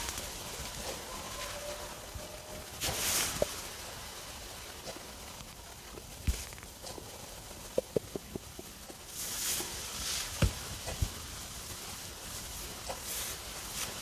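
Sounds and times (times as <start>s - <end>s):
soft hissing: 0.0s - 14.0s
stomach gurgling: 4.9s - 9.1s.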